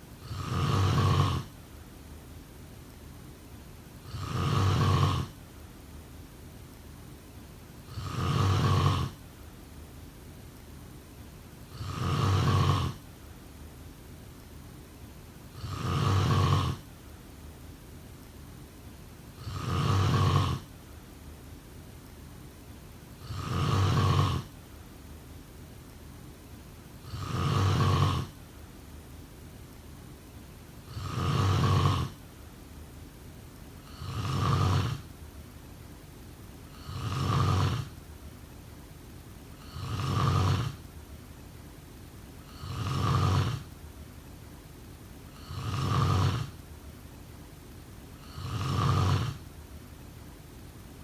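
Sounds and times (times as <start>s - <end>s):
faint steady hiss: 0.0s - 51.0s
person snoring: 0.2s - 1.5s, 4.0s - 5.3s, 7.9s - 9.2s, 11.7s - 13.0s, 15.6s - 16.8s, 19.4s - 20.7s, 23.2s - 24.5s, 27.0s - 28.4s, 30.9s - 32.2s, 33.8s - 35.1s, 36.7s - 38.0s, 39.6s - 40.8s, 42.5s - 43.7s, 45.3s - 46.6s, 48.2s - 49.5s.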